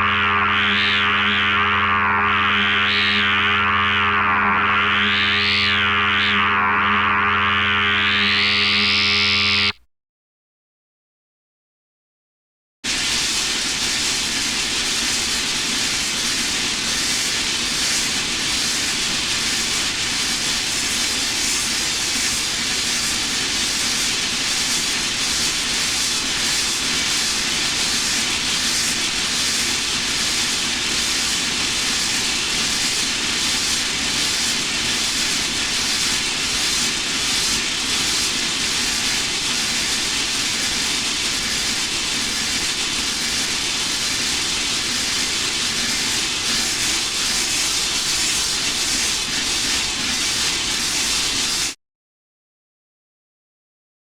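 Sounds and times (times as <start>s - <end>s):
synthesized hissing drone: 0.0s - 9.8s.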